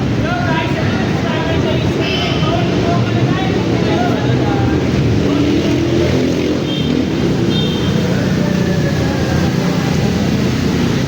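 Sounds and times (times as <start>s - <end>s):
vehicle engines running: 0.0s - 11.0s
background voices: 8.0s - 11.0s.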